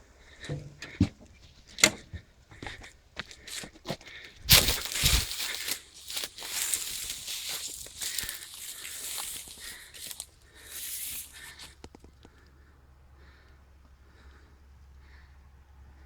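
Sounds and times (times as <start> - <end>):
footsteps crunching dry ground: 0.4 - 12.1
loud rustle crackling hiss: 4.5 - 11.8.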